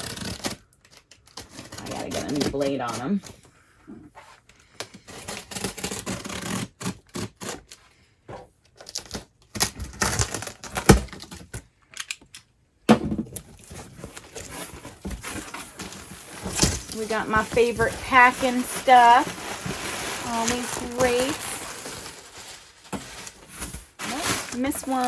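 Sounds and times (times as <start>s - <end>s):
box cutter slitting packing tape: 0.0s - 2.6s, 4.9s - 7.8s, 8.8s - 11.4s
tape and cardboard tearing: 0.0s - 3.2s, 4.7s - 7.8s, 8.7s - 12.3s, 13.0s - 25.0s.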